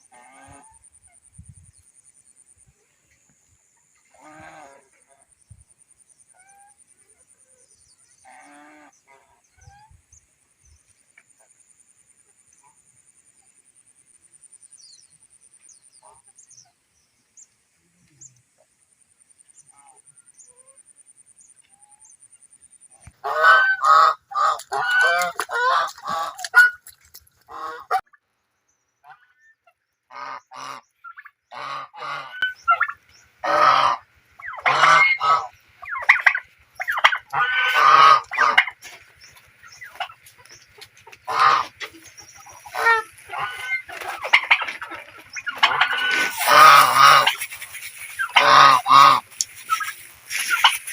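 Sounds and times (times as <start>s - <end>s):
geese honking: 23.1s - 26.9s, 27.5s - 28.1s, 30.1s - 50.9s
faint clicks: 49.3s - 50.8s.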